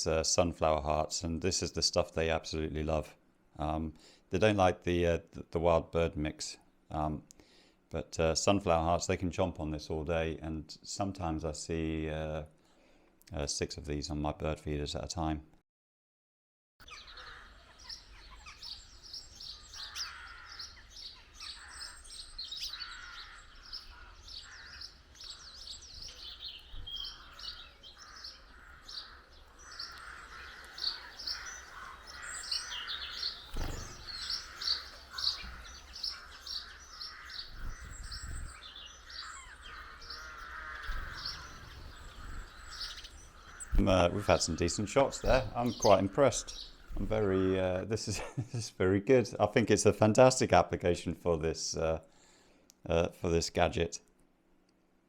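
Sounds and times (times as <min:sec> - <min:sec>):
small birds chirping: 0:16.8 - 0:48.6.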